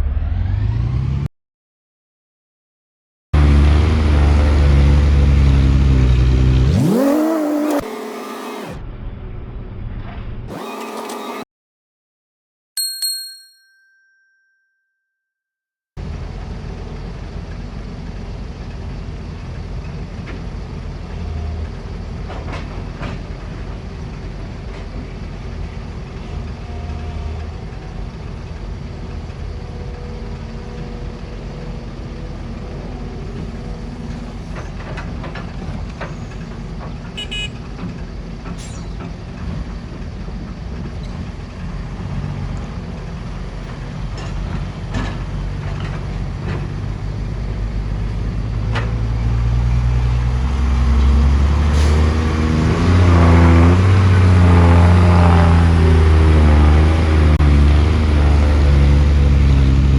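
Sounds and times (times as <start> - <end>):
diesel engines running under load: 3.4 - 11.4, 16.0 - 59.9
high squeal: 38.6 - 39.2.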